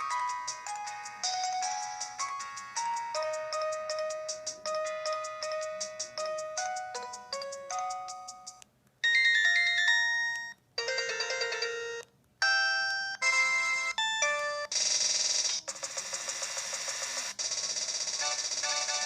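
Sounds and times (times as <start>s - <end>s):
electronic phone ringtones: 0.0s - 17.4s, 18.0s - 19.0s.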